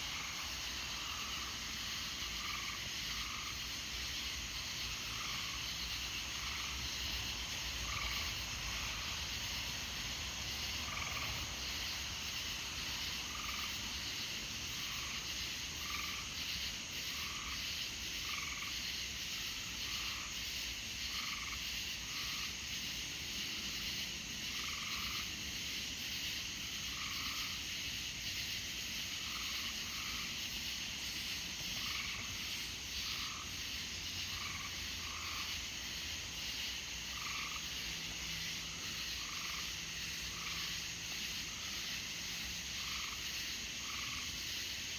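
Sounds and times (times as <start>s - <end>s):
high-pitched frog chorus: 0.0s - 20.4s, 26.4s - 44.9s
frogs croaking: 0.0s - 44.9s.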